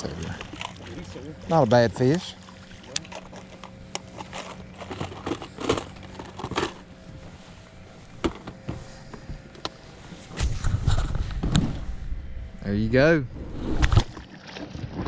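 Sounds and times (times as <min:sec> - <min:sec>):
faint low hum: 0:00.0 - 0:15.0
handling noise clicks and rustling: 0:02.9 - 0:06.9.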